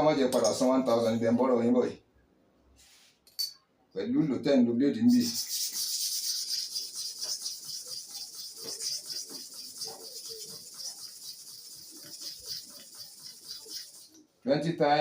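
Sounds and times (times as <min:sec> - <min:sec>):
blade scraping on sharpening stone: 0:05.1 - 0:14.2.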